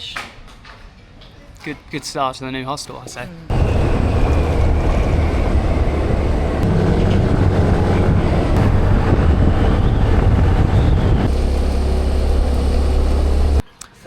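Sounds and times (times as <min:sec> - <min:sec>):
road noise: 0:03.5 - 0:13.6
scooter engine: 0:03.5 - 0:13.6
wind rushing over microphone: 0:03.5 - 0:13.6.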